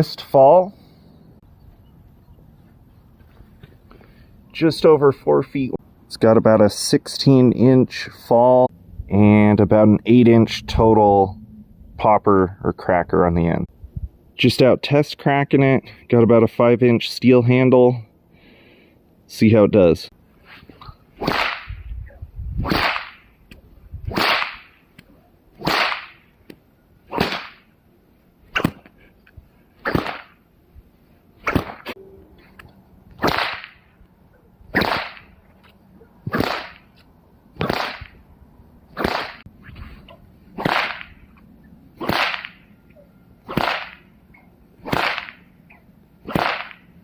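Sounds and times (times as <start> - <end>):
whip cracking: 21.2 - 21.8, 22.6 - 23.2, 24.1 - 26.3, 27.1 - 27.7, 28.5 - 28.9, 29.8 - 30.4, 31.4 - 31.9, 33.2 - 33.8, 34.7 - 35.4, 36.2 - 36.9, 37.6 - 38.2, 39.0 - 39.5, 40.6 - 41.3, 42.0 - 42.7, 43.4 - 44.1, 44.8 - 47.0.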